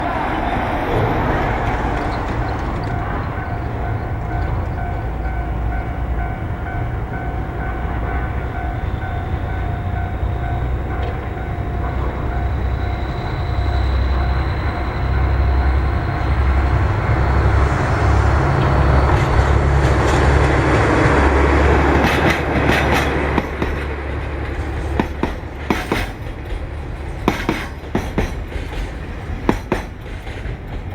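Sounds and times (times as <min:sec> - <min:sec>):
diesel locomotive engine rumble: 0:00.0 - 0:30.9
train wheels clattering over rail joints: 0:00.4 - 0:06.4, 0:18.6 - 0:30.9.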